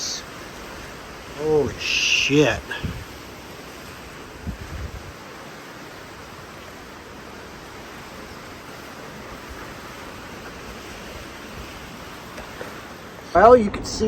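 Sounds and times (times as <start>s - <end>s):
wind buffeting microphone: 0.0s - 5.5s
strong wind rushing: 2.6s - 3.2s, 4.4s - 5.2s.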